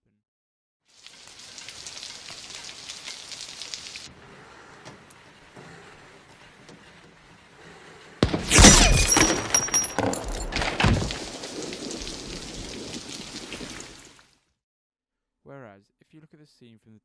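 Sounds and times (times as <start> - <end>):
gunfire: 8.2 - 11.6
crash: 8.2 - 14.0
loud blast with shattering debris: 8.2 - 14.0.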